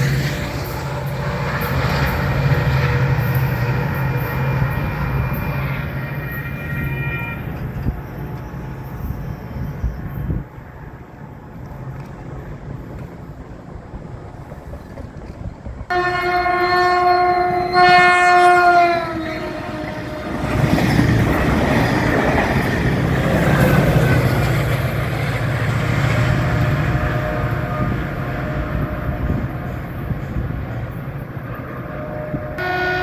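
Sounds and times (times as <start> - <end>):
train horn blast: 0.0 - 8.0, 15.9 - 21.0, 26.1 - 30.1, 31.6 - 33.0
wheels clacking on rails: 0.0 - 32.7.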